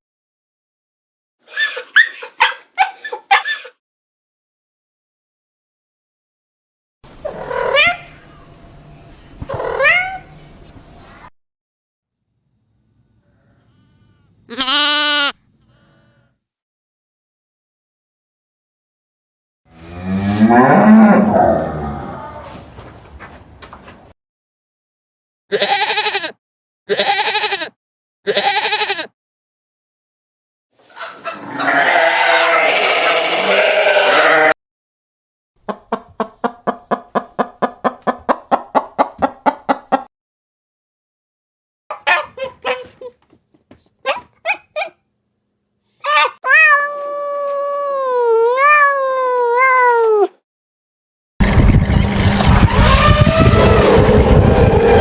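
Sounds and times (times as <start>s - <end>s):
goat bleating: 13.8s - 15.4s, 25.5s - 27.7s, 28.3s - 29.1s, 31.5s - 34.6s
domestic animal calls: 30.9s - 34.5s.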